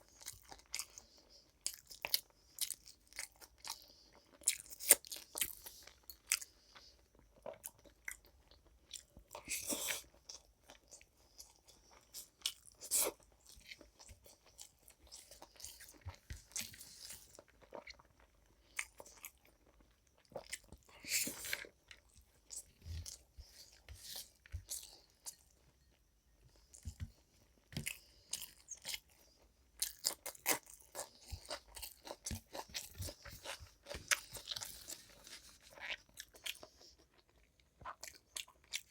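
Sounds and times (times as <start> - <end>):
person crunching and chewing: 0.0 - 25.8, 26.7 - 38.9.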